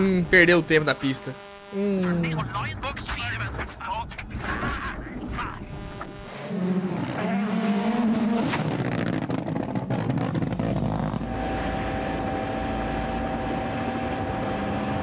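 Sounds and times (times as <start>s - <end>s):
rapid crackling and rattling: 2.5s - 6.3s
rally car engine revving: 5.2s - 12.0s.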